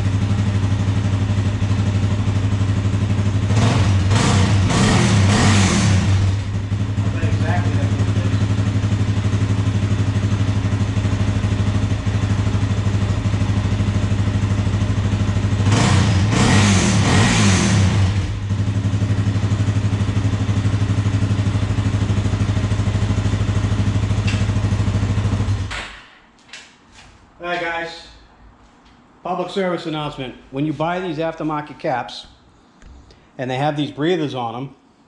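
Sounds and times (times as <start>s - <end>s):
atv engine idling and revving: 0.0s - 25.8s.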